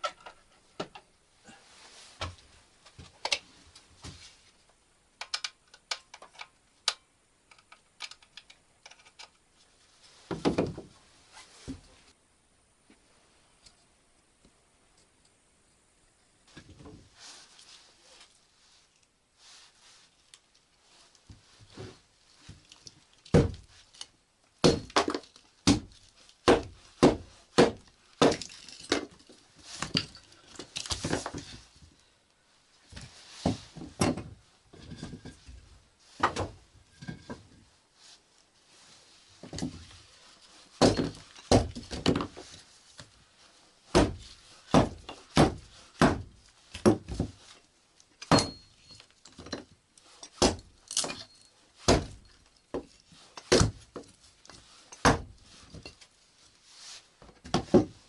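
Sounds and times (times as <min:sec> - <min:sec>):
sharp knocks and thuds: 0:10.3 - 0:11.0, 0:23.3 - 0:23.8, 0:24.6 - 0:29.2, 0:32.9 - 0:37.5, 0:40.8 - 0:42.6, 0:43.9 - 0:47.5, 0:50.4 - 0:51.2, 0:51.9 - 0:54.1, 0:55.0 - 0:55.8, 0:57.2 - 0:58.0.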